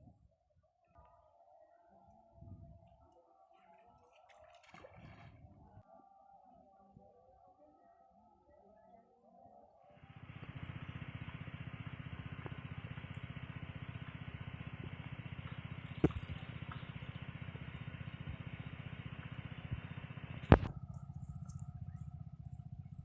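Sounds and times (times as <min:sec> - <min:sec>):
small engine running: 0:10.0 - 0:23.0.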